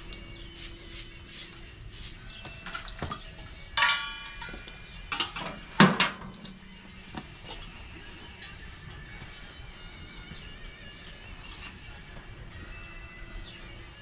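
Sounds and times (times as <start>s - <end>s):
metal tools clinking and knocking: 2.6s - 9.4s, 10.3s - 13.6s.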